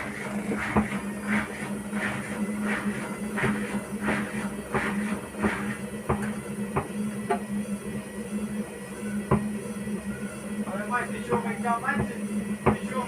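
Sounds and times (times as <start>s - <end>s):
washing machine motor hum: 0.0s - 13.0s
washing machine drum knocking: 11.2s - 13.0s.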